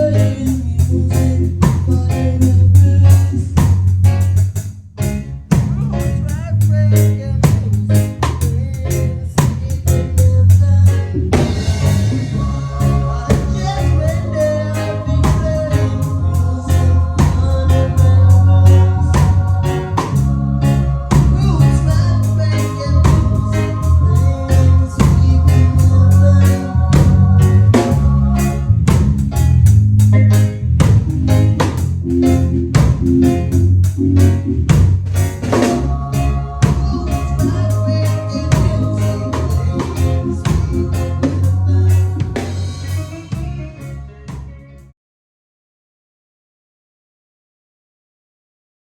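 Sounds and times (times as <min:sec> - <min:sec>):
drum kit beat: 0:00.0 - 0:44.5
heavy bass line: 0:00.0 - 0:44.9
live band playing: 0:00.0 - 0:44.9
held notes: 0:11.3 - 0:43.7.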